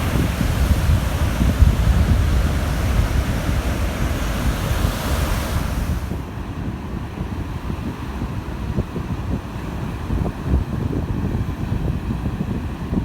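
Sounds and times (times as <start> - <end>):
surf washing onto beach: 0.0 - 6.6
wind buffeting microphone: 0.0 - 13.0.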